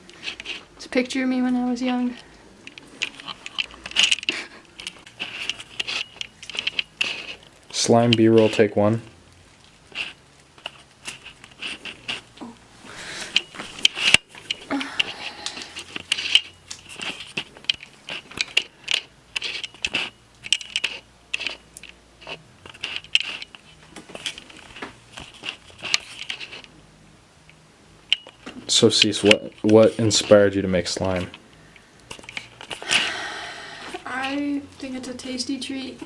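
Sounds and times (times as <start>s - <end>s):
slime squelching: 2.2s - 26.7s.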